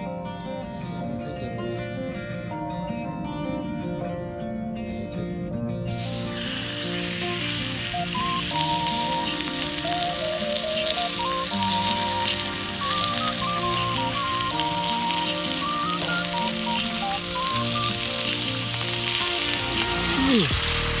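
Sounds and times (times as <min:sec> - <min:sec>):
plucked-string melody: 0:00.0 - 0:21.0
food sizzling in a pan: 0:05.9 - 0:21.0.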